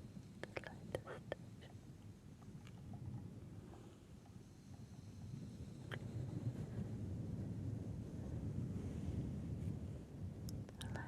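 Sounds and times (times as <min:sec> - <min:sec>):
microphone noise floor rumble: 0:05.8 - 0:11.0.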